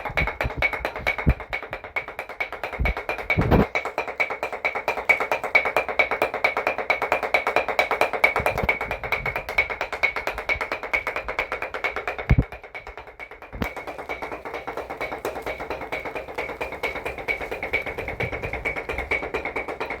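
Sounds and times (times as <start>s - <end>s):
wooden paddles beating cloth: 0.0s - 20.0s
heavier knock: 8.1s - 20.0s.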